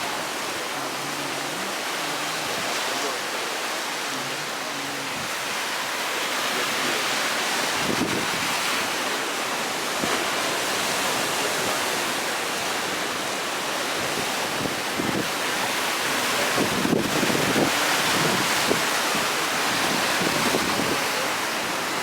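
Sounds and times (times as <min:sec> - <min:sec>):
sea waves breaking on shore: 0:00.0 - 0:22.0
wind buffeting microphone: 0:07.6 - 0:09.0, 0:13.7 - 0:22.0.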